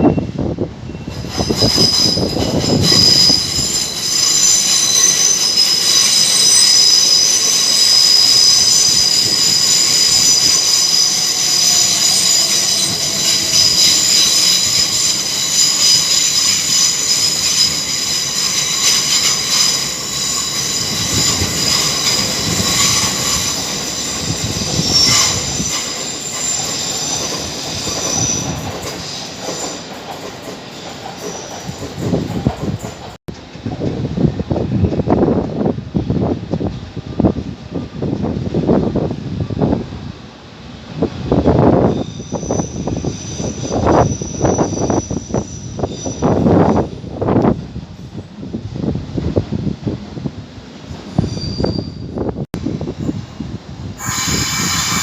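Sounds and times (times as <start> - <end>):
metallic wheel squeal: 0.0 - 29.9, 41.8 - 46.9, 51.2 - 52.3, 54.0 - 55.0
train rumbling past: 0.0 - 55.0.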